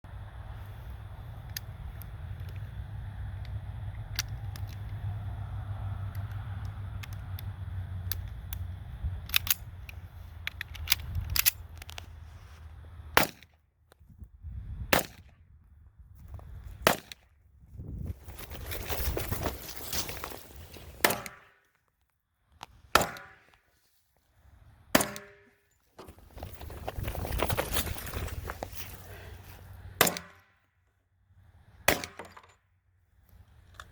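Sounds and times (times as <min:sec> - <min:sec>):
pistol metallic clicks: 0:06.0 - 0:12.1.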